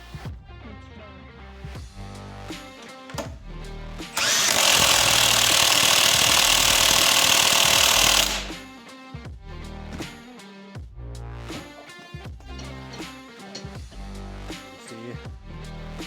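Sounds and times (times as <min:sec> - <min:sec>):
background music: 0:00.0 - 0:16.0
impact wrench hammering bolt: 0:04.2 - 0:08.6.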